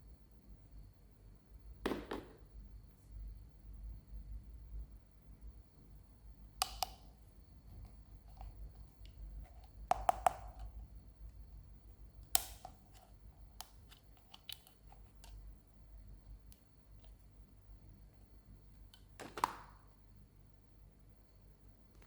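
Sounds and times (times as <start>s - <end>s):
toy packaging clicks and taps: 8.3s - 10.7s.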